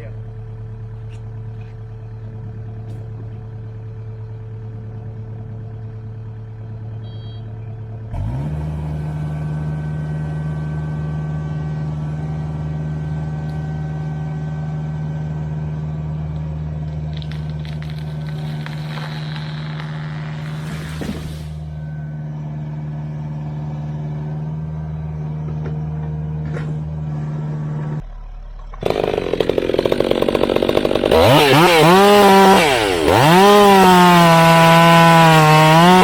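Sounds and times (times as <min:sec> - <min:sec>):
excavator engine revving: 0:00.0 - 0:36.0
crackling: 0:16.3 - 0:21.8.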